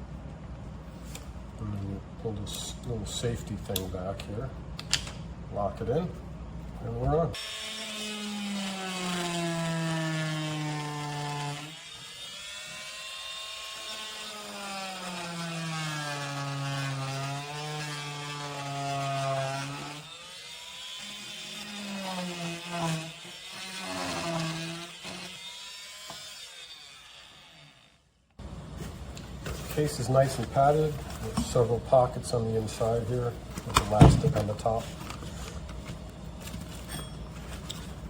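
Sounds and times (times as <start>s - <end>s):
oscillating multi-tool whining: 7.4s - 28.0s.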